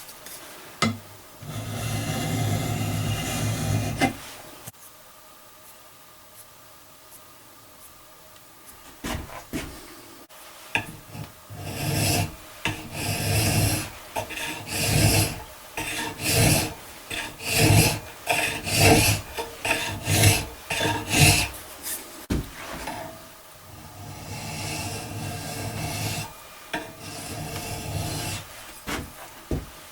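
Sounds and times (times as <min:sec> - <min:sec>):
file rasping on metal barrel: 0:01.4 - 0:04.2, 0:10.8 - 0:22.0, 0:23.7 - 0:29.0
handling knocks: 0:22.3 - 0:22.6, 0:28.8 - 0:29.9.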